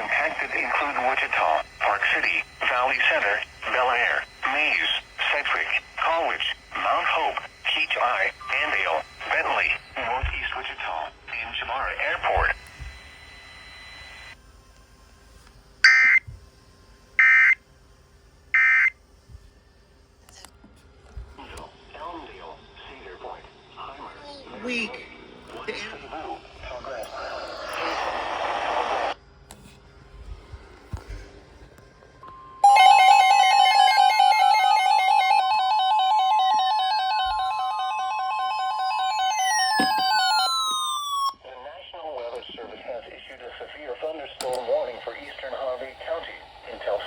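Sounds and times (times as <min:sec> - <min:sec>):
warbling two-pitch alarm tone: 0:00.0 - 0:10.4, 0:15.9 - 0:16.2, 0:17.2 - 0:17.6, 0:18.6 - 0:18.9, 0:32.6 - 0:41.4
buzzy screechy data tones: 0:00.0 - 0:14.4.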